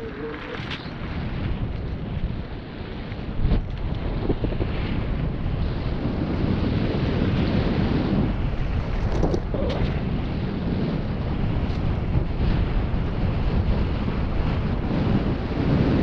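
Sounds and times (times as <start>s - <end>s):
wind rushing over microphone: 0.0s - 16.0s
bike clicks and rattles: 3.1s - 4.2s, 9.0s - 10.0s.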